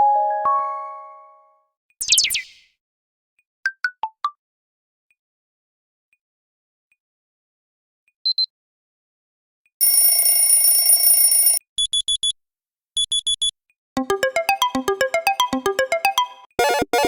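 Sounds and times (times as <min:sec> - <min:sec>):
quick beeps: 0:13.0 - 0:13.5
synthesized ringtone melody: 0:14.0 - 0:17.0.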